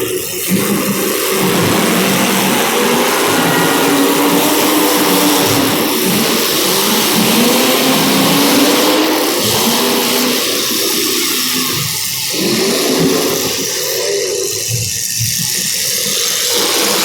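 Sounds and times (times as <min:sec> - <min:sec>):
car engines revving: 0:00.5 - 0:10.4
steady rushing noise: 0:01.0 - 0:06.2.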